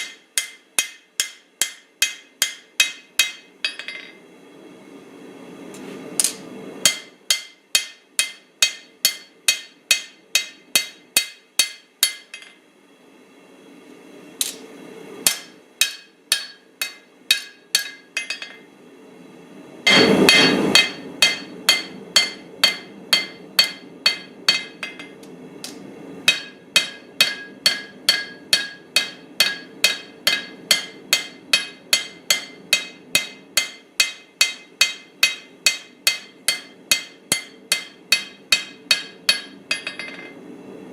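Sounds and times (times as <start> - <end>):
hammer ringing on anvil: 0.0 - 4.2, 6.8 - 12.6, 15.3 - 18.6, 19.9 - 25.2, 26.3 - 40.4
steady low hum: 0.0 - 40.9.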